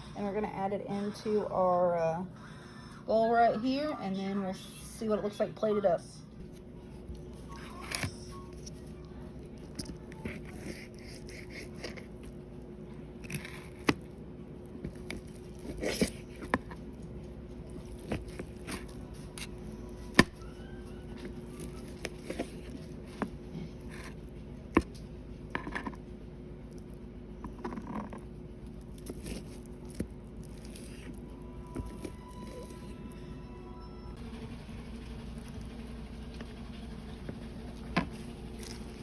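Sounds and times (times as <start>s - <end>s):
knife scraping: 9.8s - 12.3s.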